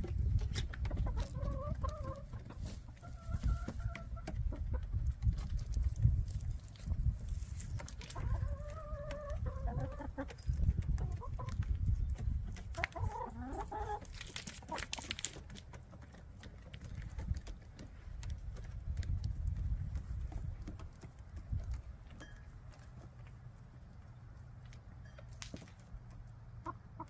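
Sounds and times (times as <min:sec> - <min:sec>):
hens calling: 0:00.7 - 0:05.1, 0:07.8 - 0:15.0.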